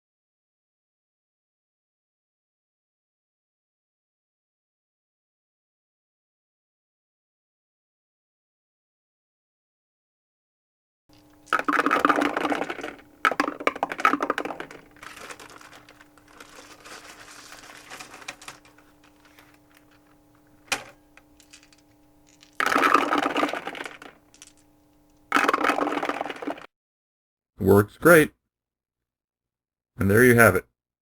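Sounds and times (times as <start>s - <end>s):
dice rattling through dice tower: 11.2s - 19.5s, 21.4s - 24.6s, 25.3s - 26.7s.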